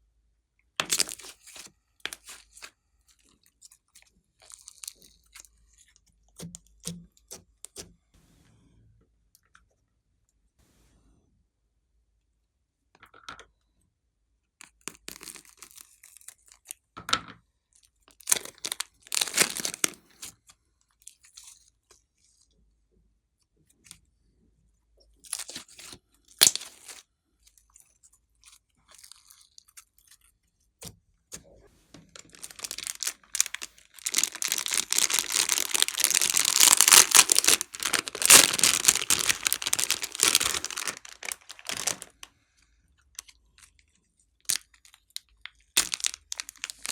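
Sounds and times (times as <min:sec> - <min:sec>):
slime squished by hand: 0:00.8 - 0:02.7, 0:18.2 - 0:20.3, 0:32.1 - 0:42.2, 0:45.8 - 0:46.9
crunchy crackling handling: 0:18.3 - 0:20.0, 0:32.0 - 0:42.3, 0:45.8 - 0:46.9.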